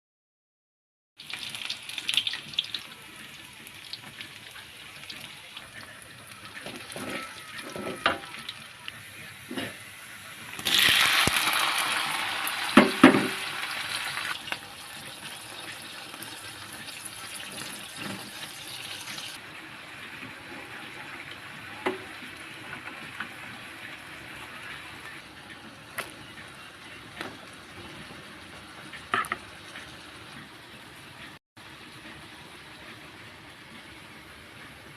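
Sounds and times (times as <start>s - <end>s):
utensils and cookware clinking: 6.4s - 8.6s, 16.9s - 19.4s.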